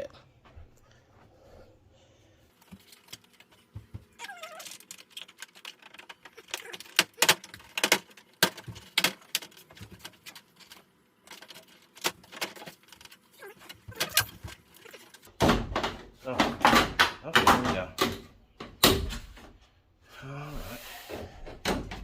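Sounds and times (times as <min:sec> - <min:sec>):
plastic parts clicking and clacking: 0:02.6 - 0:19.1.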